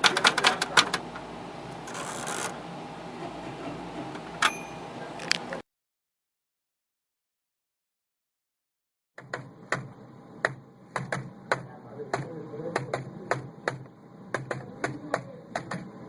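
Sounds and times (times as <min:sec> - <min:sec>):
sharp irregular clicks: 0:09.2 - 0:15.9.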